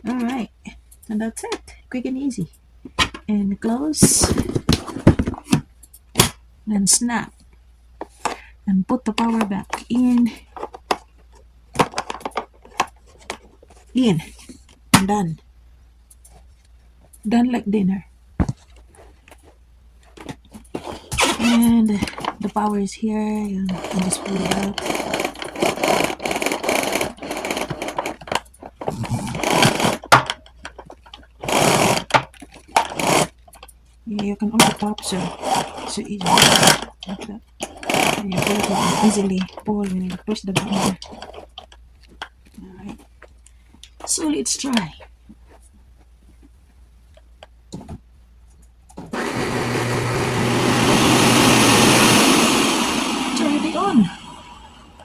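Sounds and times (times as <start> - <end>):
vacuum cord rattling and scraping: 3.2 - 5.6, 9.2 - 14.7, 18.5 - 48.1, 48.9 - 55.0
vacuum cleaner motor whirring: 20.8 - 21.6, 23.7 - 28.2, 37.7 - 39.4, 49.0 - 55.0.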